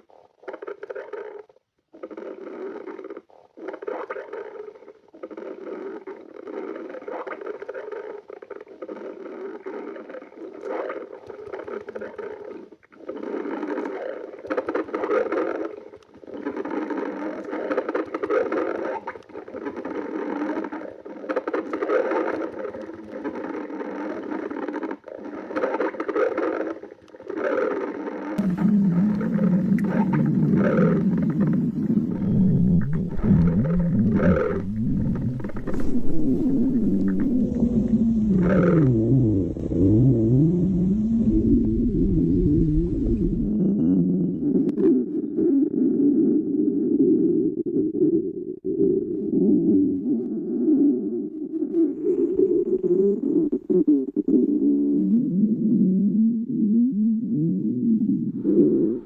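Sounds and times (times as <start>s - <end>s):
stomach growling: 0.0s - 59.0s.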